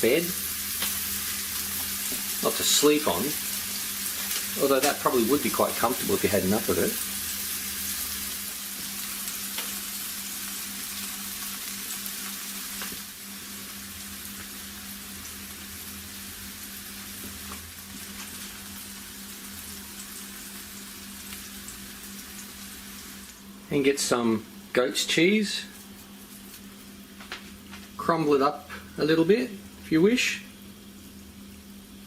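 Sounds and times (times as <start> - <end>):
food sizzling on a grill pan: 0.0 - 23.4.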